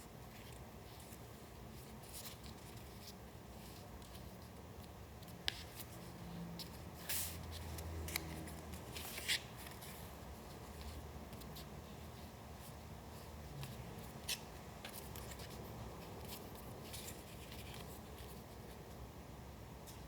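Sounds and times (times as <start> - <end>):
paper rustling: 5.2 - 12.2.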